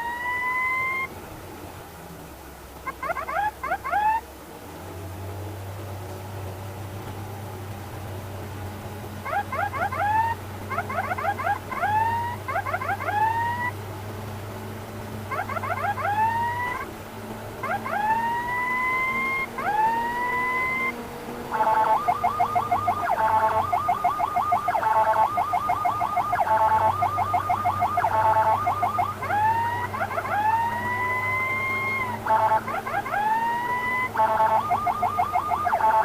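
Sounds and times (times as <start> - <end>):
ambulance siren: 0.0 - 1.1, 2.9 - 4.2, 9.2 - 13.8, 15.3 - 16.9, 17.6 - 36.0
low vehicle drone: 0.0 - 36.0.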